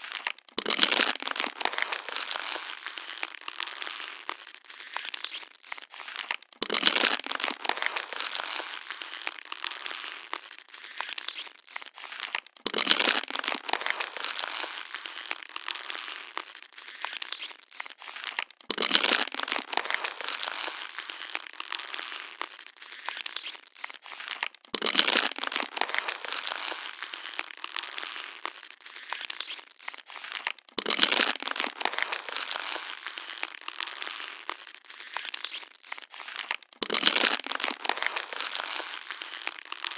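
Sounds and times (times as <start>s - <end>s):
plastic bottle being crushed: 0.0s - 39.9s.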